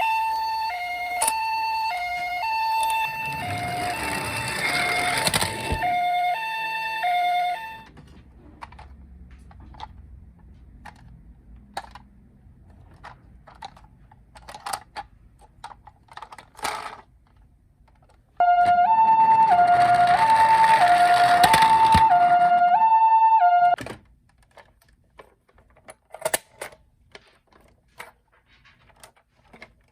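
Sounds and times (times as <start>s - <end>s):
toy two-tone siren: 0.0s - 7.9s, 18.4s - 23.8s.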